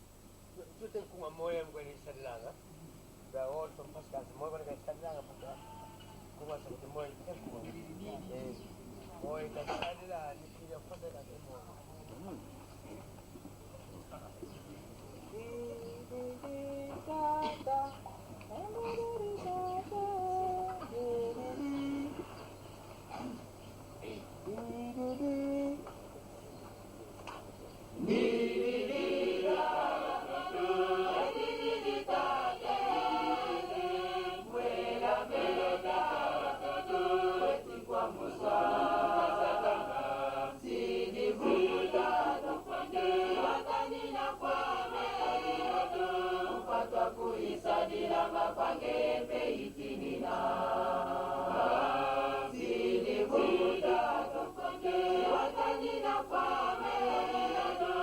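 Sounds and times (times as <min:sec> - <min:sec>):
choir singing a hymn: 0:18.6 - 0:22.2, 0:28.0 - 0:58.0.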